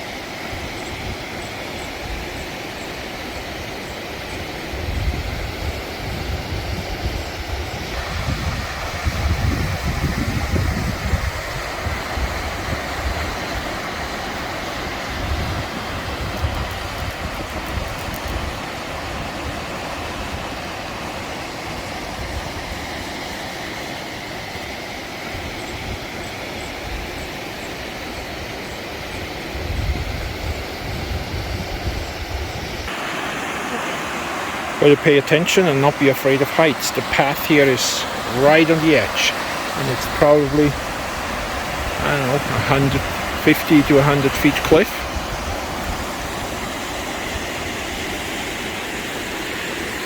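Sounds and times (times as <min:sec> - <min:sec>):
wind buffeting microphone: 0:04.7 - 0:20.8, 0:29.4 - 0:33.6, 0:37.0 - 0:48.6
river water rushing over rocks: 0:07.9 - 0:25.4, 0:32.9 - 0:50.0.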